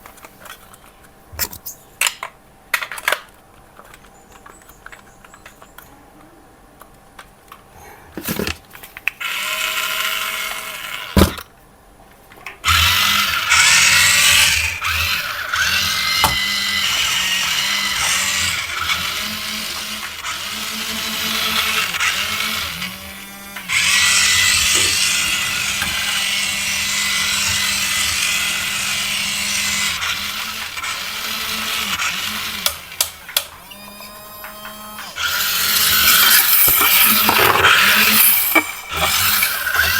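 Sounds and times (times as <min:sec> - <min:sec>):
toy electric motors whirring: 0:08.2 - 0:11.5, 0:12.6 - 0:39.9
motor stopping click: 0:12.6 - 0:39.9.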